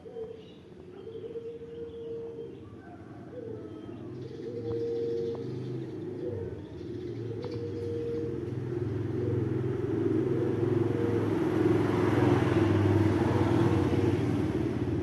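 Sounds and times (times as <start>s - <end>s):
vehicle engine passing by: 3.9s - 15.0s.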